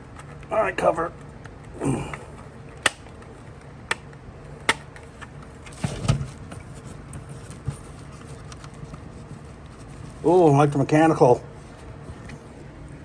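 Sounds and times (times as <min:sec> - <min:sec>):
sharp plastic clicks: 0:02.8 - 0:05.3
knocking and scraping handling noise: 0:05.6 - 0:10.3.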